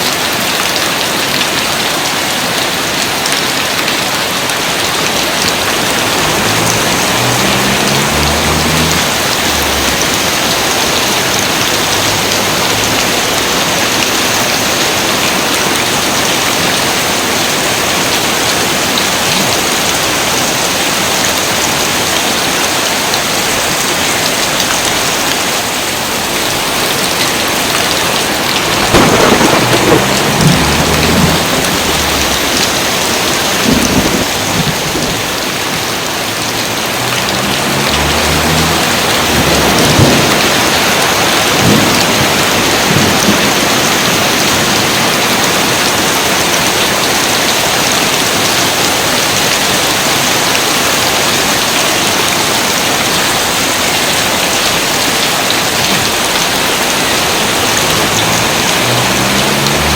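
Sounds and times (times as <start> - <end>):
heavy rain: 0.0 - 59.9
thunder rumbling: 5.2 - 14.4, 27.3 - 35.6, 36.8 - 45.3
sharp thunder cracks: 28.6 - 32.8.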